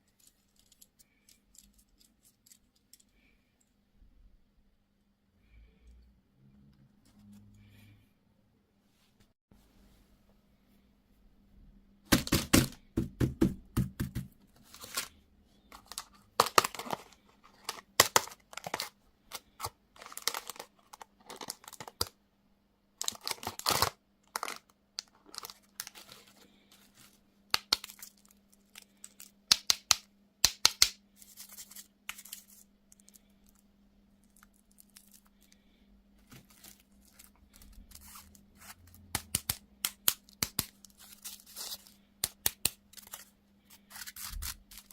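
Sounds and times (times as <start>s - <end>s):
plastic wrapper crinkling: 15.8s - 22.2s, 23.0s - 29.4s, 31.2s - 44.9s.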